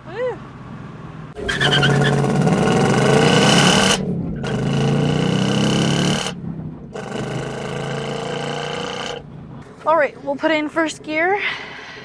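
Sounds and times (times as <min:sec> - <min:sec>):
car engine revving hard: 0:01.4 - 0:09.2.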